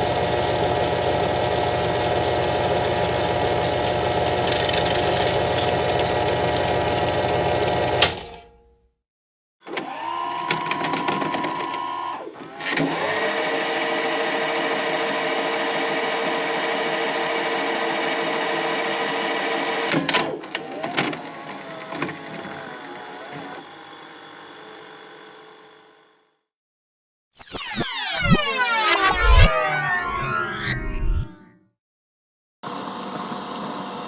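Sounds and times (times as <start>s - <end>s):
mechanical rewind whir: 0.0s - 8.2s, 17.6s - 25.2s, 27.4s - 31.5s
clicking whir: 3.8s - 8.6s, 9.6s - 13.3s, 19.8s - 23.7s
whir with wavering pitch slides: 27.4s - 31.6s.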